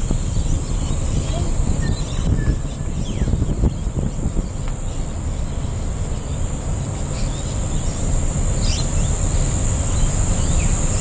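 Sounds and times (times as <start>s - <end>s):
low rumbling noise: 0.0s - 11.0s
bird chirps: 0.3s - 6.4s, 8.6s - 9.2s.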